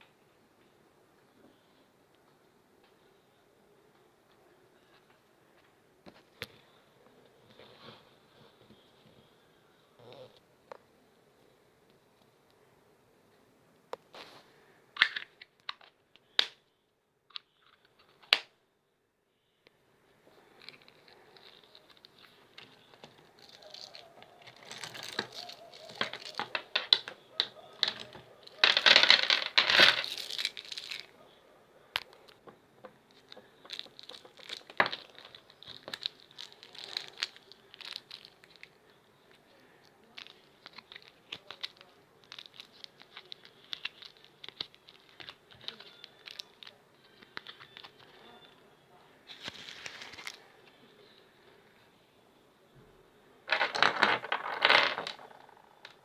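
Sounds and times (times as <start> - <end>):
dense rustling: 20.9 - 31.1.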